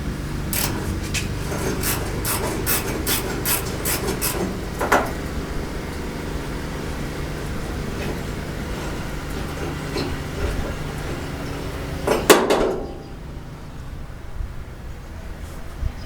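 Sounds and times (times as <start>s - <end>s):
short scraping clicks on metal: 0.5s - 4.6s.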